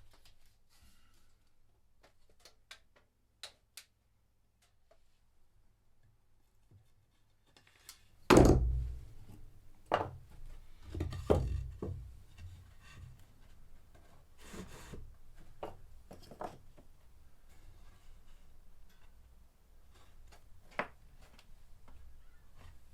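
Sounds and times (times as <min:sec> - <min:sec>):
heavy wooden thud: 0:08.3 - 0:09.2.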